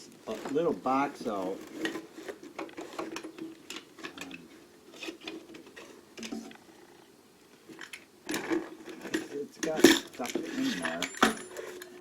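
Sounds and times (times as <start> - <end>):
small metal items clattering in box: 7.8 - 12.0.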